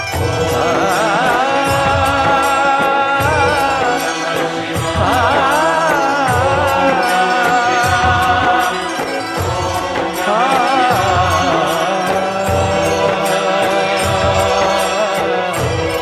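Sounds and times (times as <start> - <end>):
steady drum beat: 0.0 - 16.0
sustained melody with vibrato: 0.0 - 16.0.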